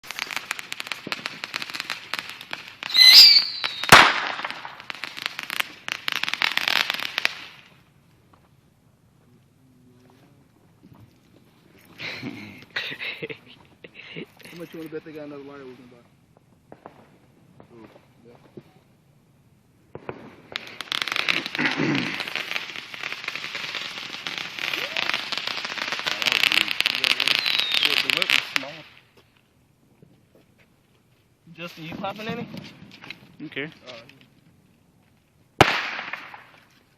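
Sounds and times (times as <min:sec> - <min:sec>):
firecrackers crackling: 0:00.0 - 0:19.0, 0:19.8 - 0:29.6, 0:31.4 - 0:36.9
firework whistle: 0:02.8 - 0:05.1, 0:20.6 - 0:28.3
loud firework bang: 0:02.9 - 0:04.9, 0:19.9 - 0:22.7, 0:35.6 - 0:36.6.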